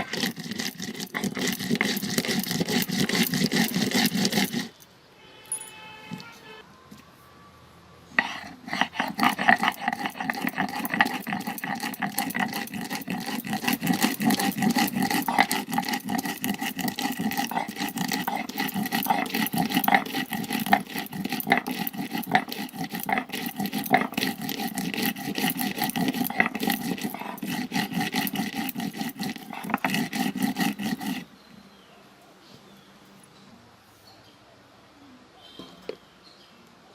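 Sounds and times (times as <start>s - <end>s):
stone grinding on stone: 0.0s - 4.8s, 8.2s - 31.3s.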